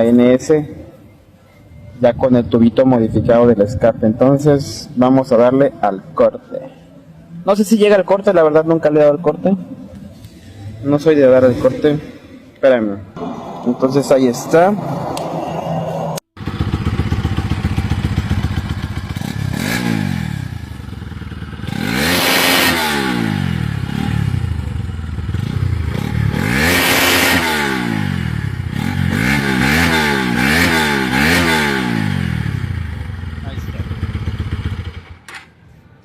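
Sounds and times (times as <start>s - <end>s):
motorcycle engine idling and revving: 16.4s - 35.5s.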